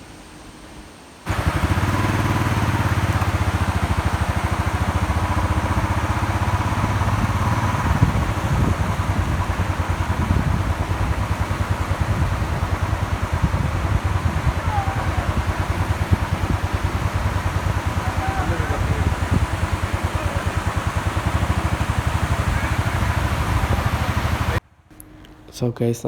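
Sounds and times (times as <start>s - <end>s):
vehicle engine idling: 1.3s - 25.6s.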